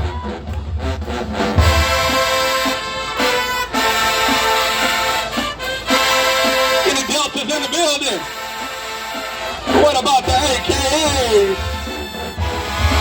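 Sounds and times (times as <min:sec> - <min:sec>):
brass section chords: 0:00.0 - 0:13.0
low drum beats: 0:00.0 - 0:13.0.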